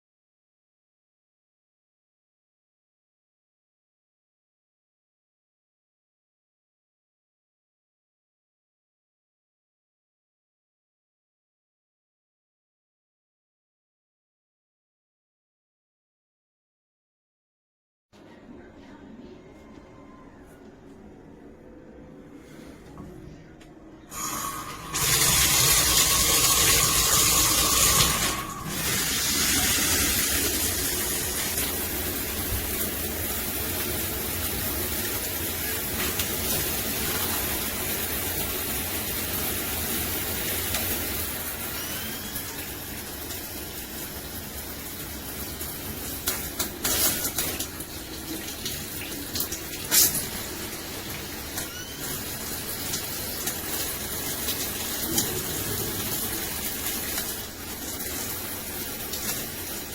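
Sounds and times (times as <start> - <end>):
shower water spraying: 24.1 - 59.9.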